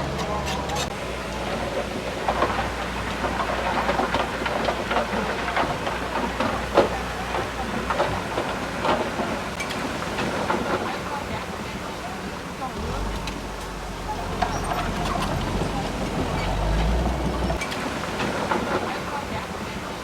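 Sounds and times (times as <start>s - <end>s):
bulldozer tracks clanking: 0.0s - 20.0s
diesel engine drone: 12.0s - 17.6s.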